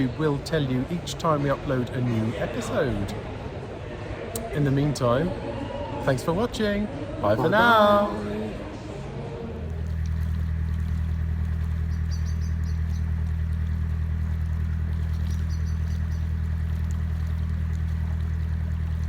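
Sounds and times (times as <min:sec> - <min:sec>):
engine running with low hum: 0:07.1 - 0:19.0.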